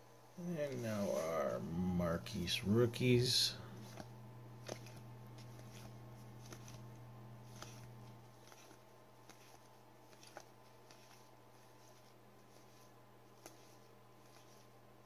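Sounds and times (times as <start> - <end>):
steady low hum: 0.0 - 15.0
trading cards being handled: 0.6 - 1.5, 2.9 - 14.8.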